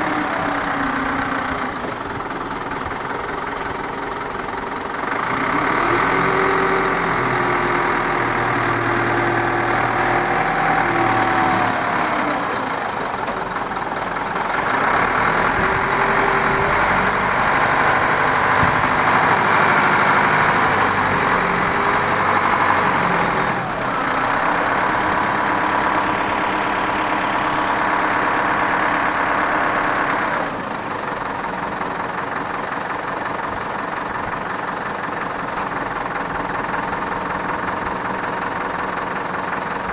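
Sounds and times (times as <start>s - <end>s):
wheel loader diesel engine running: 0.0s - 39.9s.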